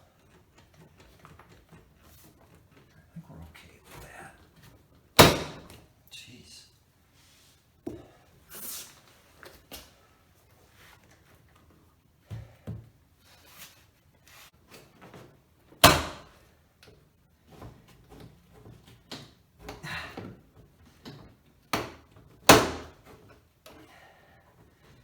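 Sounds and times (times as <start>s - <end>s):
loud sharp knocks of door panel: 5.2s - 5.7s, 15.8s - 16.3s, 21.8s - 23.0s.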